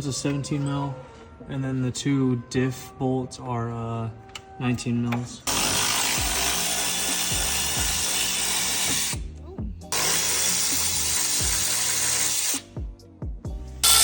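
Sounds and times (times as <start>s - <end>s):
bass-heavy background music: 0.0s - 14.0s
power tool running: 5.5s - 9.2s, 9.9s - 12.6s.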